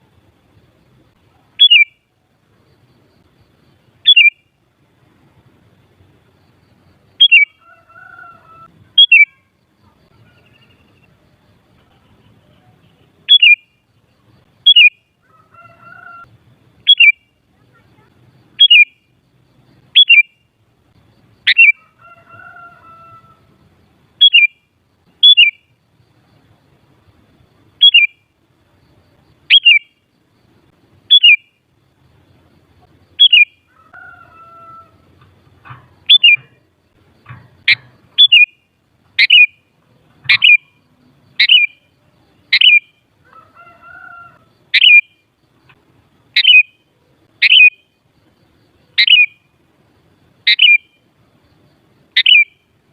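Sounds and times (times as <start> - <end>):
bird sharp downward calls: 1.3 - 2.1, 4.0 - 4.5, 7.1 - 11.2, 13.2 - 13.8, 14.6 - 19.1, 19.8 - 20.5, 21.4 - 23.5, 24.2 - 25.8, 27.8 - 28.3, 29.5 - 30.1, 31.1 - 31.6, 33.1 - 48.0, 48.8 - 49.5, 50.4 - 51.0, 52.1 - 52.7.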